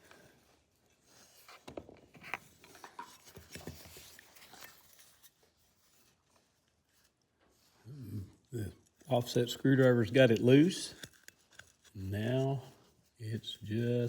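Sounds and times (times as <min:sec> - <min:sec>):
screwdriver clicking and scraping on metal: 0:10.3 - 0:12.0.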